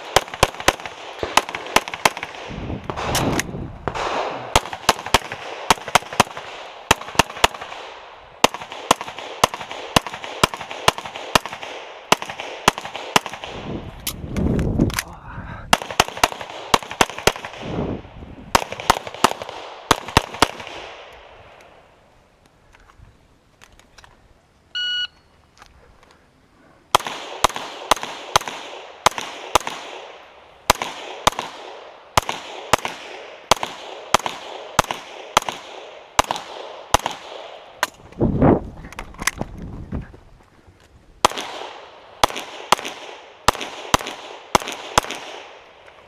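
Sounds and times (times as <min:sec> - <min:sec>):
rapid gunshots: 0:00.0 - 0:13.6, 0:15.7 - 0:17.8, 0:18.5 - 0:21.0, 0:26.9 - 0:30.1, 0:30.7 - 0:37.6, 0:41.2 - 0:45.5
electronic shot-timer beep: 0:24.8 - 0:25.2.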